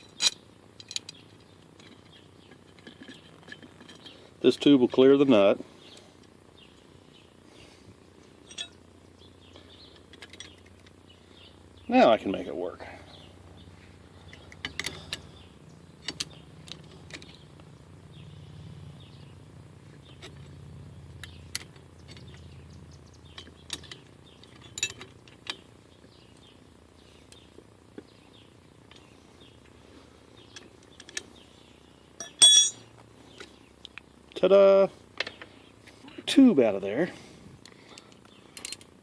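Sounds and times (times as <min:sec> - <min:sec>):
birds chirping: 0:00.0 - 0:38.6
low hum: 0:05.6 - 0:25.0
sharp metallic clank: 0:08.4 - 0:08.8, 0:32.2 - 0:32.9.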